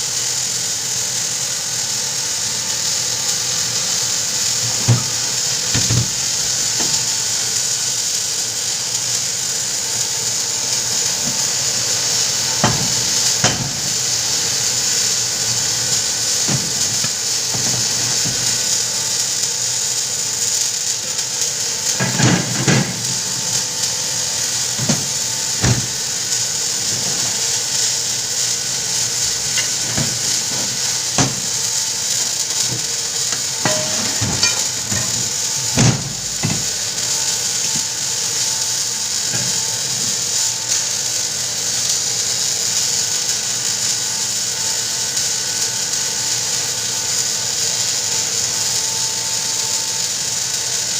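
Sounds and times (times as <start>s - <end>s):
steady high hiss: 0.0s - 50.9s
tools knocking on metal: 5.7s - 6.2s, 12.6s - 13.8s, 33.6s - 36.7s.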